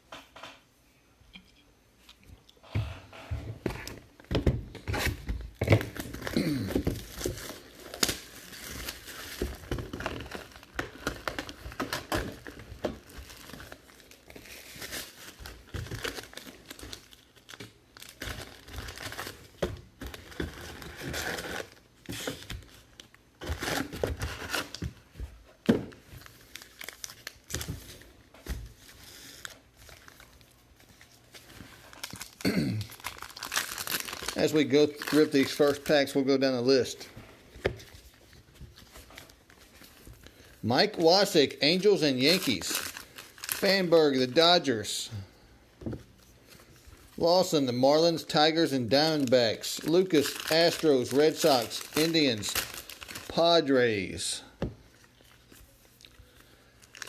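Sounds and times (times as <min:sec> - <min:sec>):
wrappers crinkling and rustling: 0:03.7 - 0:45.0, 0:46.0 - 0:57.0
wrappers tearing: 0:31.7 - 0:37.0, 0:41.1 - 0:44.8, 0:48.1 - 0:54.1, 0:56.8 - 0:57.0.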